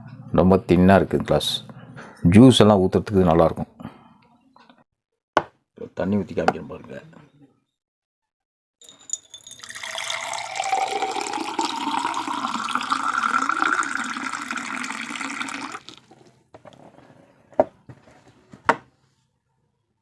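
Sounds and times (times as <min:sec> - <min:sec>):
water pouring into glass: 0:08.8 - 0:16.1.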